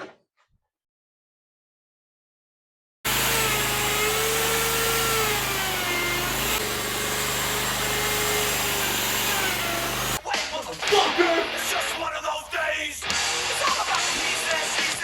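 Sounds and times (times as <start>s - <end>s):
electric power tool running: 3.1s - 10.2s.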